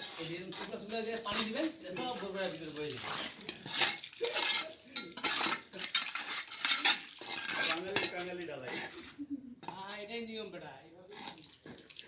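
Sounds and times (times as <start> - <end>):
metal tools scraping on concrete: 0.0 - 10.2, 11.0 - 11.8.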